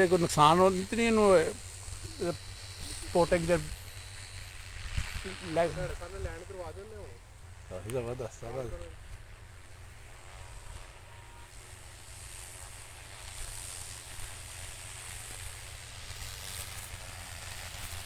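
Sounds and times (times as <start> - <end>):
wind rumbling on microphone: 0.0 - 7.3
drone rotors whirring: 0.0 - 18.0.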